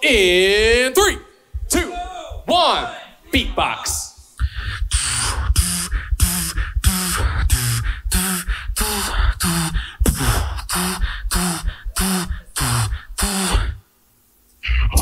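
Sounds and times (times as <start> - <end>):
beatboxing into a microphone: 4.4 - 13.8, 14.6 - 15.0.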